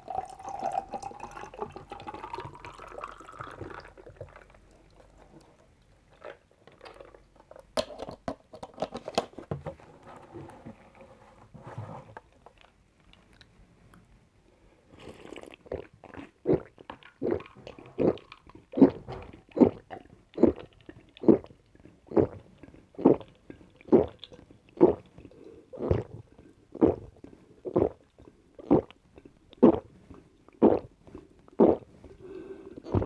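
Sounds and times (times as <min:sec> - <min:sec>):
person gulping a drink: 0:00.0 - 0:08.3, 0:14.9 - 0:29.9, 0:30.5 - 0:33.0.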